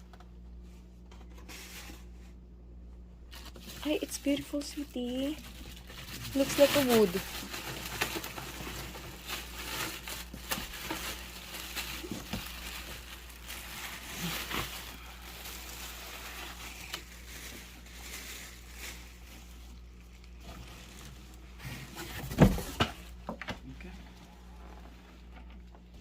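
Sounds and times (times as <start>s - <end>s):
packaging rustling and crinkling: 3.3s - 23.7s.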